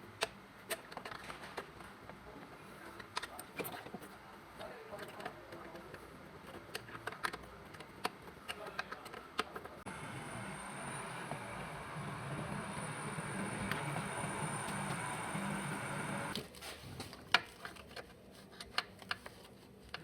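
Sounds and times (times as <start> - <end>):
hum with high whine: 9.9 - 16.4.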